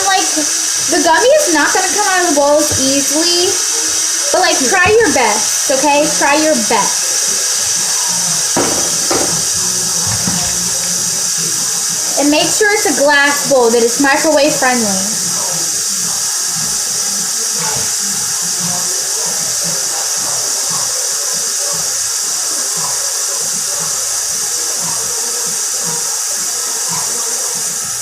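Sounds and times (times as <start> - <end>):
tap running into sink: 1.6 - 3.5, 4.7 - 5.3, 8.5 - 10.9.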